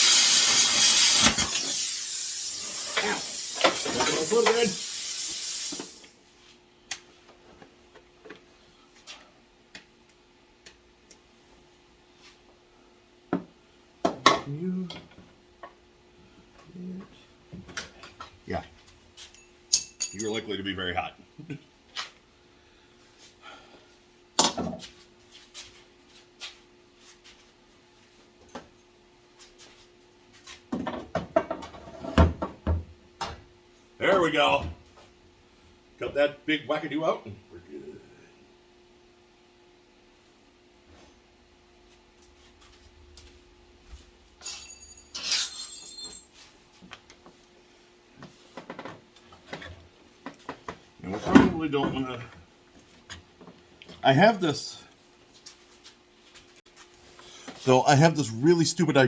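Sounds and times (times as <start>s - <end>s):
hissing noise: 0.0s - 6.1s.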